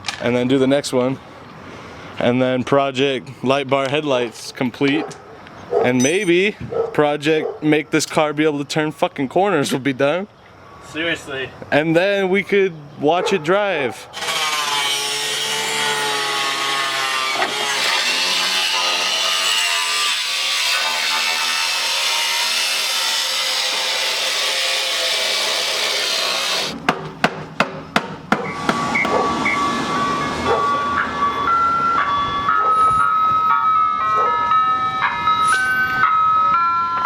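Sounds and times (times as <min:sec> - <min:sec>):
rasping sawing noise: 0:14.1 - 0:26.8.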